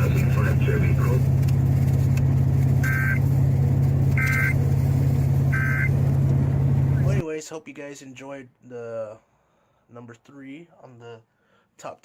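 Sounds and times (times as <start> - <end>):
steady low hum: 0.0 - 7.2
two-tone digital data warble: 2.8 - 3.2, 5.5 - 5.9.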